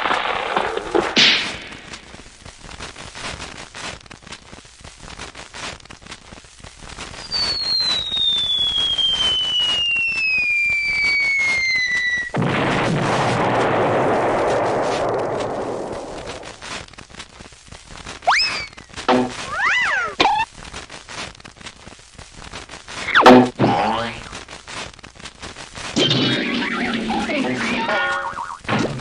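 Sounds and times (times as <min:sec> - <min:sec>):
descending whistle: 0:07.2 - 0:12.3, 0:18.3 - 0:18.9
loud rumbling explosion: 0:12.3 - 0:16.5
faint crackling clicks: 0:20.4 - 0:23.1, 0:24.3 - 0:26.0.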